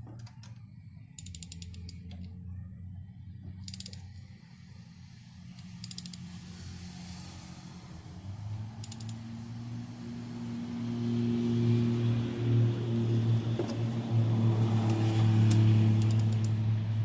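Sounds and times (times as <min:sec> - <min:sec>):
steady low hum: 0:00.0 - 0:17.0
ratchet wrench clicking: 0:00.2 - 0:02.3, 0:03.6 - 0:04.3, 0:05.6 - 0:06.5, 0:08.8 - 0:09.2, 0:14.8 - 0:16.6.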